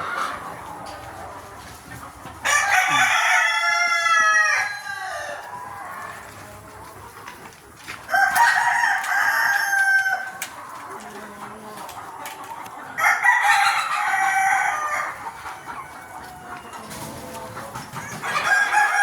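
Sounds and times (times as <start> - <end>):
rooster crowing: 2.4 - 5.4, 8.1 - 10.3, 13.0 - 15.2, 18.0 - 19.0.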